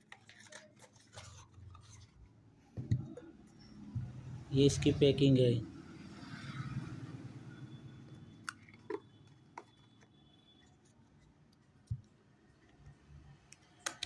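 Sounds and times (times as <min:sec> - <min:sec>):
faint clicks and taps: 0:08.4 - 0:10.1, 0:11.2 - 0:14.0.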